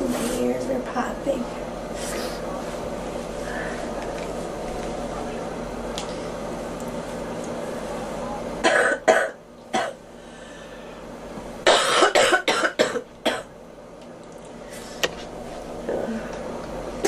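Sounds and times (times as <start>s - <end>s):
girl coughing: 8.6s - 10.0s, 11.7s - 13.5s.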